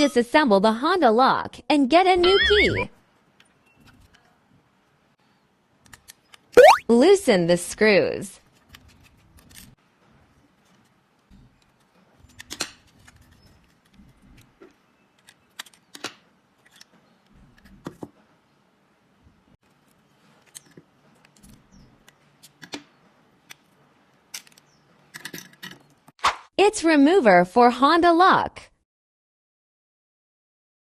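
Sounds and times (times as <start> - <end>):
small metal parts being handled: 24.3 - 26.0.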